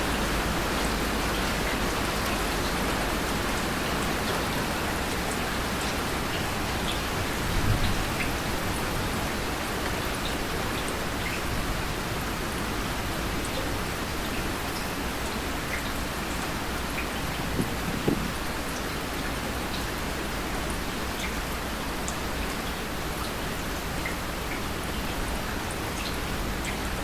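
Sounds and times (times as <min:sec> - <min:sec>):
steady rain falling: 0:00.0 - 0:27.0
low thump: 0:17.5 - 0:18.4.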